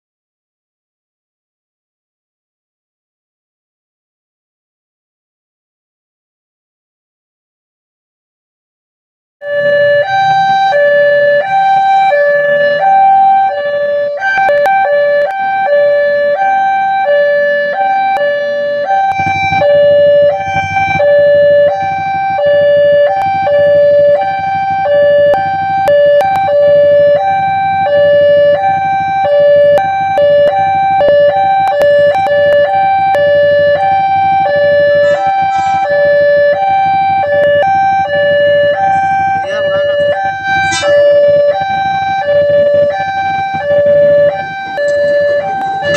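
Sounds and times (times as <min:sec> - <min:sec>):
level crossing two-tone alarm: 0:09.4 - 0:45.9
low rumble: 0:09.5 - 0:45.9.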